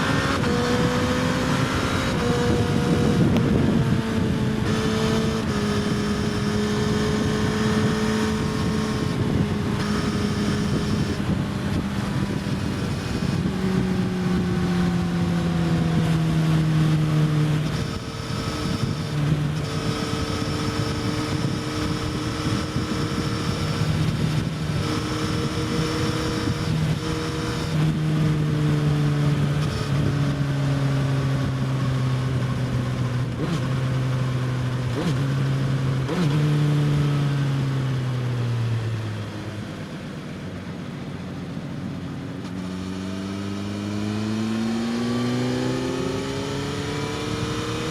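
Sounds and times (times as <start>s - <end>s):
wind rush on microphone: 0.0s - 37.5s
motorcycle engine revving: 0.0s - 40.5s, 41.4s - 47.9s.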